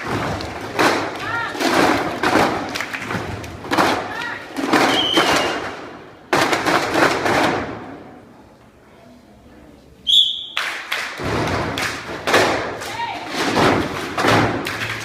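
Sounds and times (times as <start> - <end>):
drumming on tin cans: 0.0 - 5.7
whistle blast: 4.9 - 5.6, 10.0 - 10.6.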